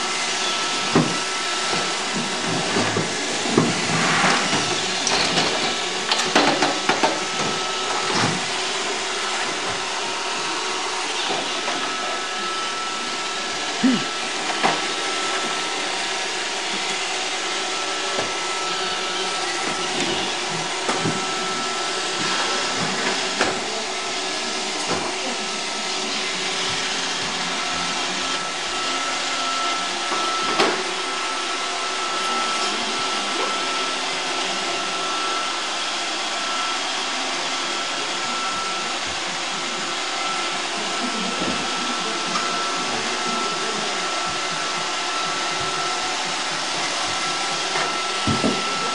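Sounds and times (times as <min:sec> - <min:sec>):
robot vacuum whirring hum: 0:00.0 - 0:48.9.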